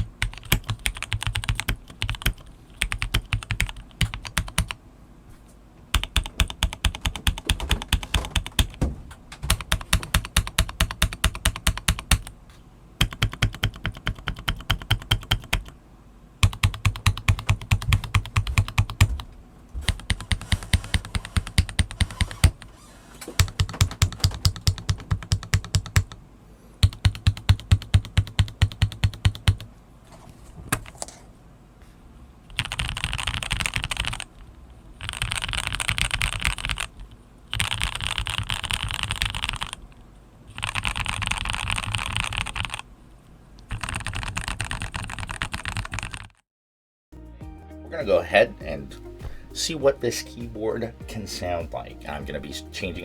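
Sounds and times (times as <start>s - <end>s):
mechanical keyboard typing: 0.0s - 4.8s, 5.9s - 8.8s, 9.5s - 12.3s, 13.0s - 15.8s, 16.4s - 19.2s, 19.8s - 22.6s, 23.4s - 26.2s, 26.8s - 29.7s, 32.5s - 34.3s, 35.0s - 39.8s, 40.6s - 42.8s, 43.7s - 46.4s.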